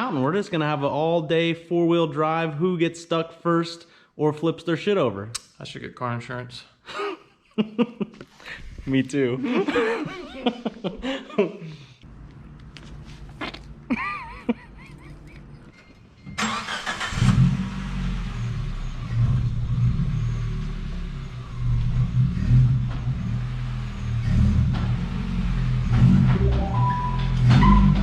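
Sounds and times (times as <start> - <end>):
car engine starting and running: 15.2 - 28.0.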